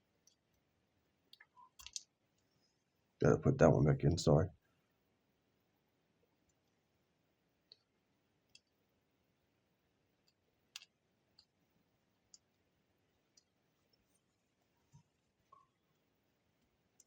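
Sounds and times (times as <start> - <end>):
small parts clicking: 1.3 - 2.1, 10.2 - 11.5.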